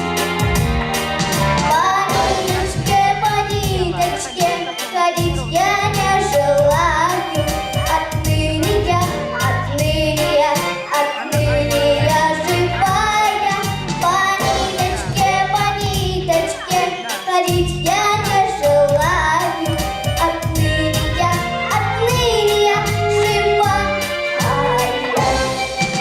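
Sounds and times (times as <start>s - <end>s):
pop backing track with beat: 0.0s - 26.0s
girl singing: 1.7s - 25.2s.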